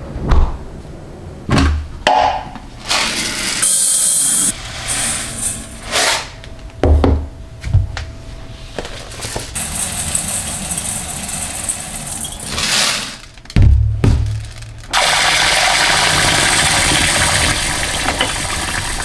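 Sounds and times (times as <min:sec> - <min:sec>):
objects knocking and thumping: 0:06.8 - 0:08.1, 0:12.2 - 0:15.3
heavy low thump: 0:13.6 - 0:15.0.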